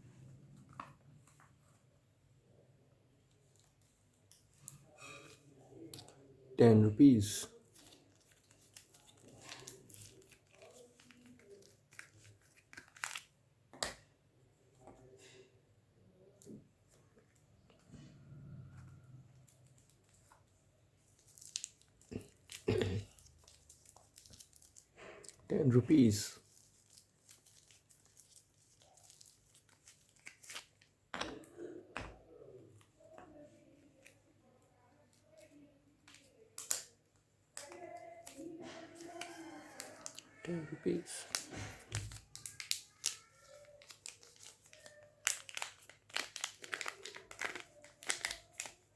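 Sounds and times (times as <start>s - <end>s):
wrapper crinkling and tearing: 7.6s - 14.0s, 21.0s - 31.5s, 36.1s - 37.0s, 37.6s - 48.9s
wrapper snapping: 7.7s - 14.1s, 21.0s - 25.4s, 26.4s - 32.2s, 35.3s - 37.0s, 37.6s - 40.4s, 41.1s - 48.9s.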